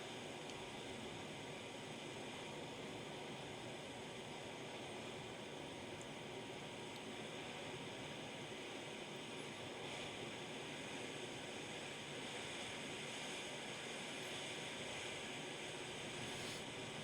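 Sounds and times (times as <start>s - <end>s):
hot air station hiss: 14.2s - 16.7s.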